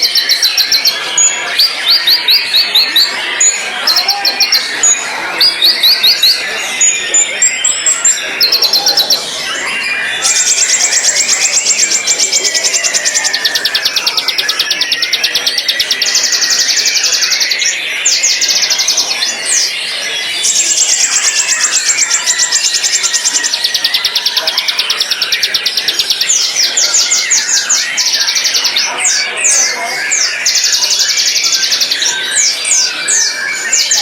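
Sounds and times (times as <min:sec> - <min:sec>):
bird singing high fast trills: 0:00.0 - 0:34.0
whistled bird notes: 0:00.0 - 0:34.0.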